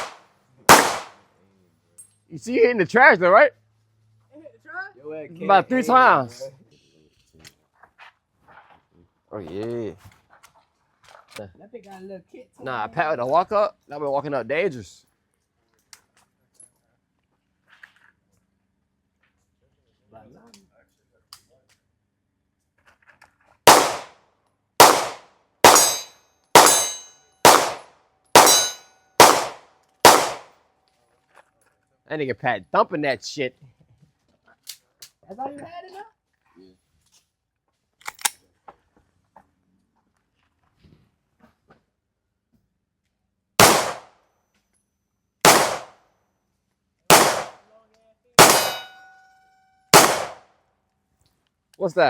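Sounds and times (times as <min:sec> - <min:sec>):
gunshots: 0:00.0 - 0:01.2, 0:23.7 - 0:24.2, 0:24.8 - 0:30.5, 0:43.6 - 0:44.1, 0:45.4 - 0:46.0, 0:47.1 - 0:47.6, 0:48.4 - 0:49.0, 0:50.0 - 0:50.4
steel plate target ringing: 0:24.8 - 0:27.8, 0:28.4 - 0:29.5, 0:48.4 - 0:49.3.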